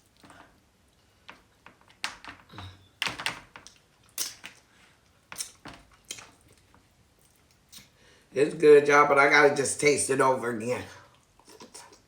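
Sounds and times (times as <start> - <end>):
wet eating clicks and smacks: 3.6 - 4.7, 5.4 - 7.9.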